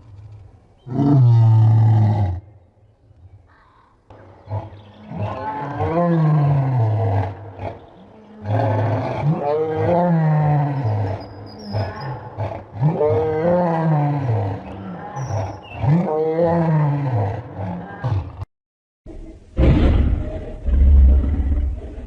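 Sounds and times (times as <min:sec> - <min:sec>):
deep lion roars: 0:04.4 - 0:18.4, 0:19.6 - 0:22.0.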